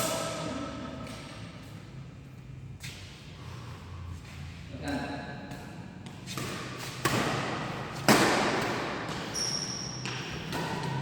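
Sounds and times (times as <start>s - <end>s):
sharp smacks echoing in a hall: 0.0s - 1.7s, 4.8s - 11.0s.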